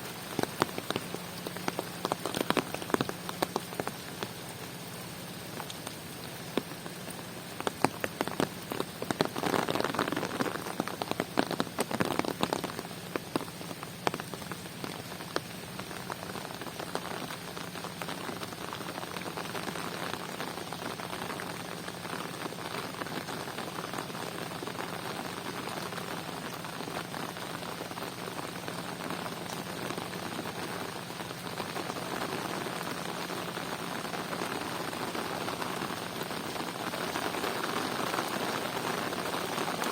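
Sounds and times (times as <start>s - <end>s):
rain falling: 0.0s - 39.9s
sharp raindrop impacts close by: 0.0s - 39.9s.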